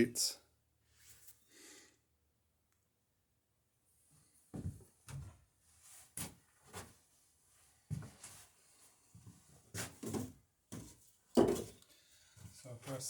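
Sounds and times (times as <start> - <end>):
knocks and clunks of objects handled: 9.8 - 12.5.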